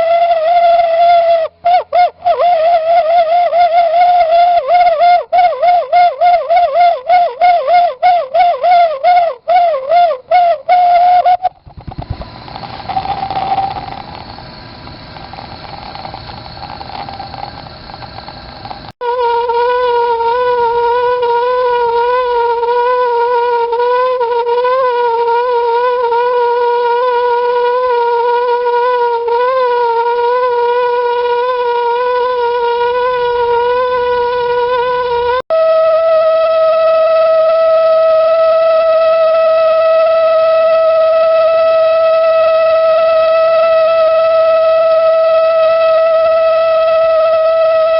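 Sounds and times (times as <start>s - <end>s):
heater whistling tone: 0.0s - 47.9s
burner hiss: 11.5s - 18.9s.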